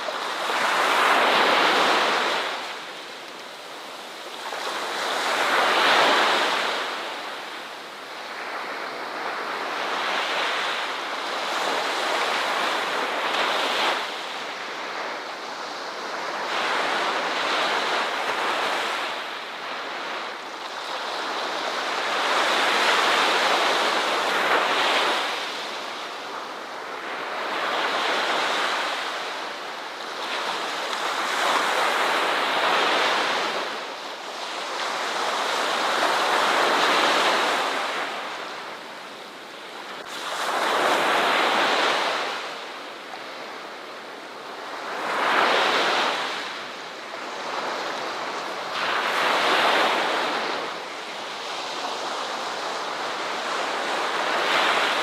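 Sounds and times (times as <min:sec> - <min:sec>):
ocean waves breaking on shore: 0:00.0 - 0:55.0.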